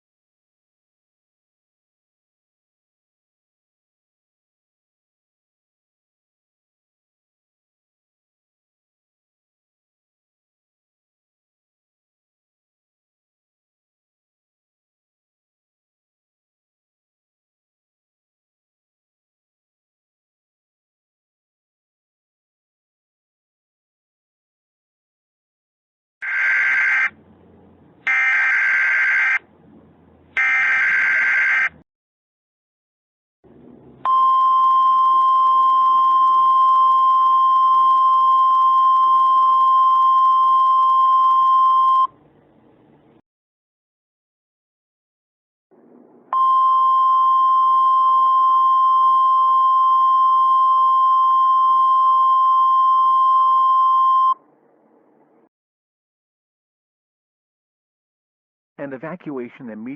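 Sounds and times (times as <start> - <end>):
high-pitched alarm tone: 28.1 - 29.4, 30.4 - 31.8.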